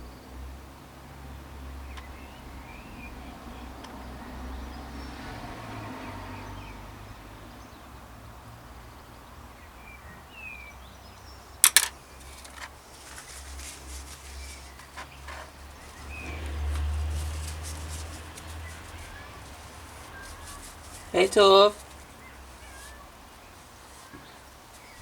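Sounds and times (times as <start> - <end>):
sharp clicks: 11.6 - 12.7
bird chirping: 17.2 - 25.0.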